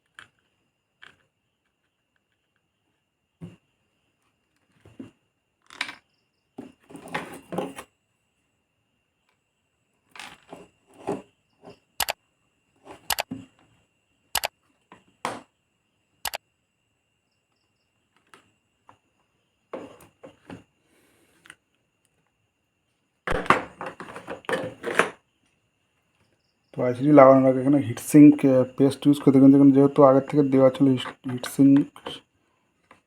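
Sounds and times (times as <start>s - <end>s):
faint steady high tone: 26.5s - 32.2s.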